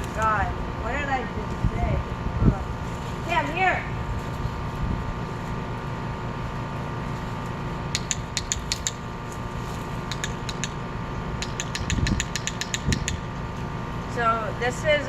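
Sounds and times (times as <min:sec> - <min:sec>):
steady background hum: 0:00.0 - 0:15.0
dog-training clicker clicking: 0:08.0 - 0:09.0, 0:10.1 - 0:10.8, 0:11.4 - 0:13.3.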